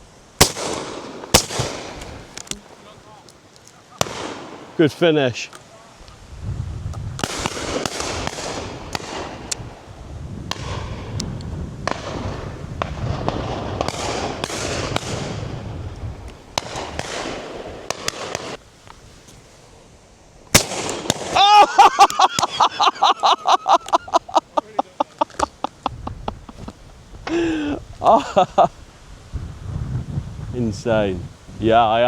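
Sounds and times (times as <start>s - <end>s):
shotgun shots with echoes: 0.4s - 2.3s, 4.0s - 4.8s, 7.2s - 9.5s, 11.9s - 15.4s, 16.6s - 18.6s, 20.6s - 21.4s.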